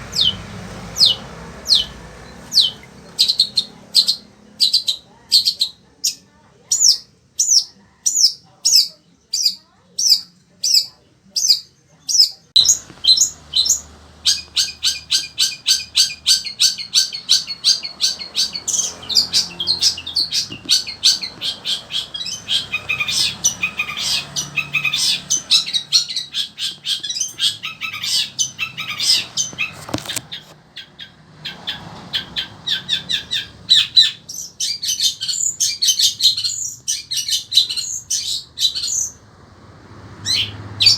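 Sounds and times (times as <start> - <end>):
shrike singing: 0.0 - 31.1.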